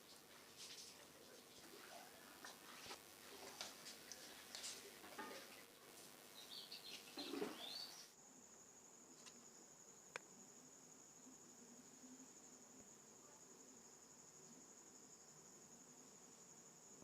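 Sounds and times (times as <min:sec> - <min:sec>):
faint clicks and scrapes: 0:00.0 - 0:06.2
crickets droning: 0:00.0 - 0:17.0.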